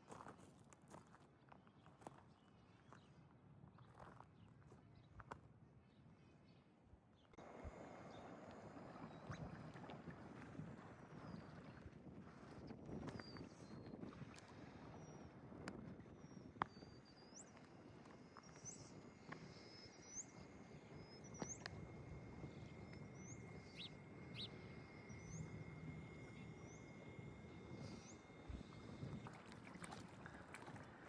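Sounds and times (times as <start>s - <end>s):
small bird chirping: 22.4s - 28.8s.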